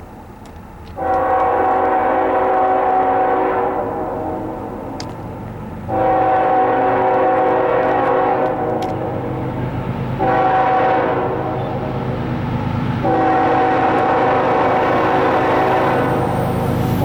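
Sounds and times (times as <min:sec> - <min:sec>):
low rumble of passing locomotives: 0:00.0 - 0:17.0
locomotive air horn blasts: 0:01.0 - 0:04.8, 0:05.9 - 0:09.0, 0:10.2 - 0:11.8, 0:13.0 - 0:16.3.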